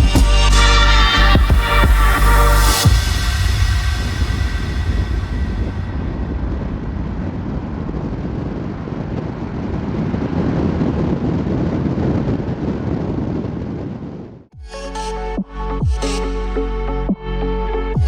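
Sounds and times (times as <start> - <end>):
music: 0.0 - 5.9, 14.5 - 18.0.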